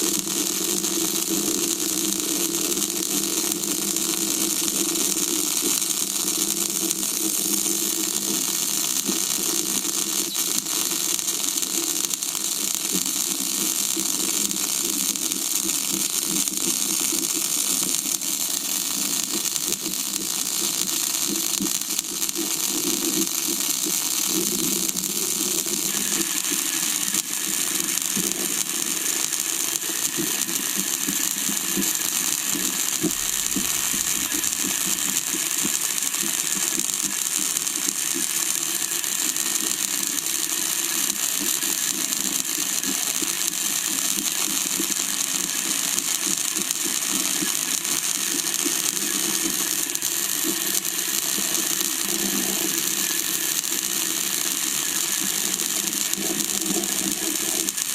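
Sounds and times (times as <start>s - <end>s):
metal lathe running: 28.9s - 35.5s.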